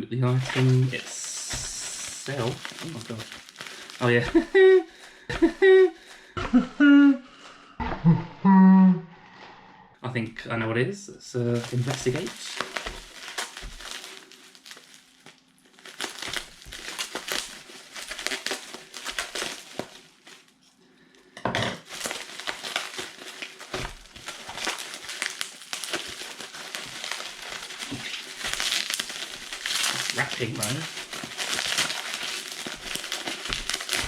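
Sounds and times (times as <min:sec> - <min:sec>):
packaging crinkling: 0:00.2 - 0:06.4, 0:11.4 - 0:21.1, 0:21.8 - 0:34.0.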